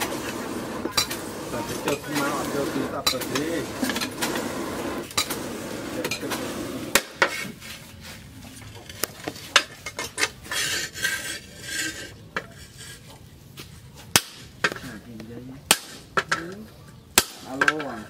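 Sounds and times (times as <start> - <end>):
steel pieces clinking and scraping: 0.0 - 7.8, 8.6 - 13.2.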